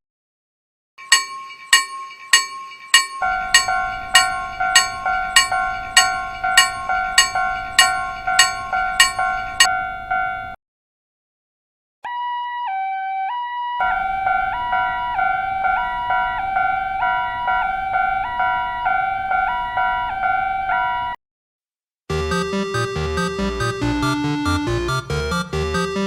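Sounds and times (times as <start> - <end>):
level crossing bell ringing: 1.0 - 9.8
lower-pitched crossing bell: 1.0 - 9.8.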